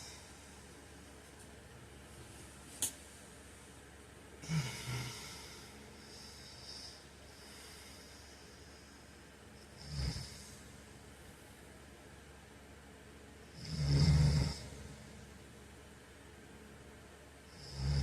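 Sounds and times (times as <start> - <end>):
soft breathing: 0.0 - 1.1, 4.4 - 11.0
man snoring: 4.4 - 8.4, 9.6 - 10.6, 13.5 - 14.9, 17.5 - 18.0.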